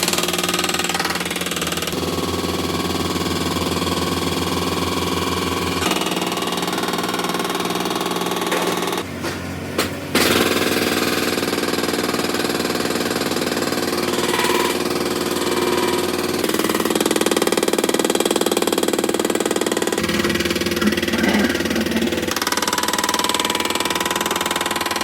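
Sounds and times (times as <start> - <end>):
hydraulic breaker hammering: 0.0 - 25.0
diesel engine running: 1.8 - 25.0.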